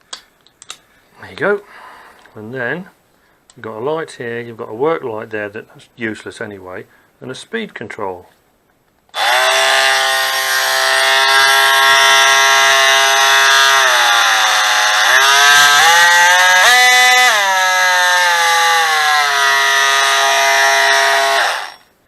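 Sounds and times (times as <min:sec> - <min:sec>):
oscillating multi-tool whine: 0:09.2 - 0:22.0.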